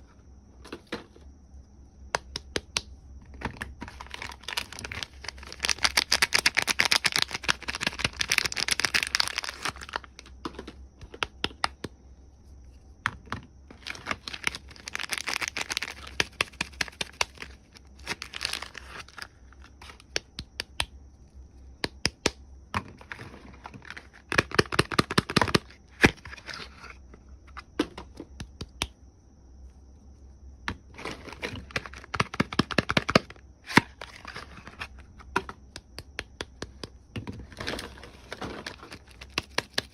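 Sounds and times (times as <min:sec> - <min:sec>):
wrapper crinkling and tearing: 0:03.9 - 0:10.1, 0:13.8 - 0:19.3.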